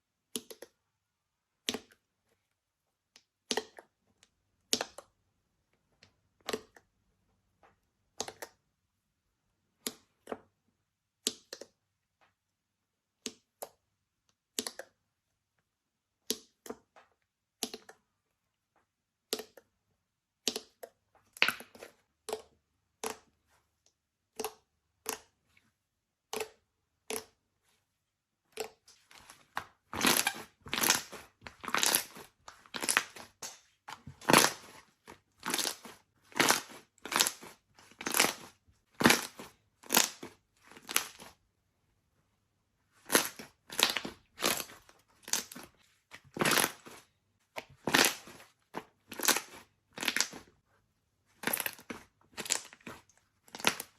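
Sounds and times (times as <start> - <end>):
slime crunching: 28.4 - 41.4, 42.9 - 50.6, 51.3 - 53.9
slime crackling and popping: 29.2 - 41.3, 43.0 - 45.7, 46.3 - 47.0, 47.6 - 50.5, 51.4 - 53.9.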